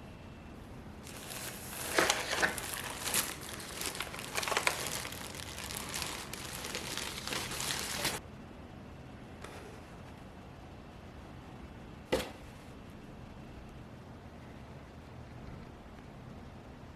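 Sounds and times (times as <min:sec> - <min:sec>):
plastic packaging crinkling: 0:01.0 - 0:08.2.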